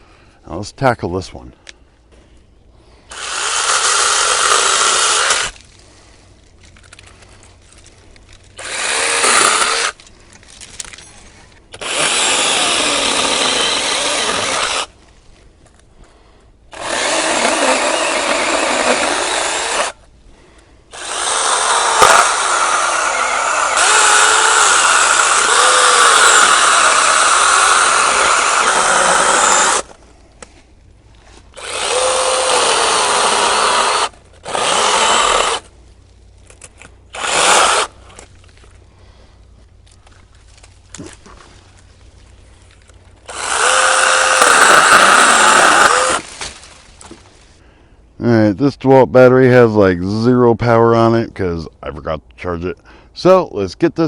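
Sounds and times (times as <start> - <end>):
mini chainsaw cutting wood: 3.1 - 5.6, 8.6 - 10.0, 11.7 - 14.9, 16.7 - 20.0, 20.9 - 30.0, 31.6 - 35.7, 37.1 - 38.0, 43.3 - 46.6.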